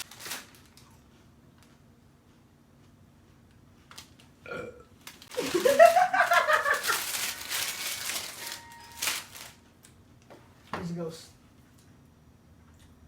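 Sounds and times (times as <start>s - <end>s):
woman burping loudly: 4.4s - 4.9s.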